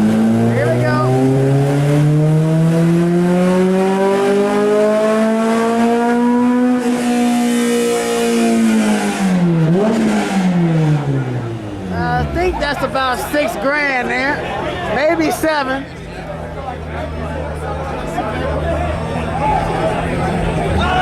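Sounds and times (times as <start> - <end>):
car engine revving on dyno: 0.0 - 11.9.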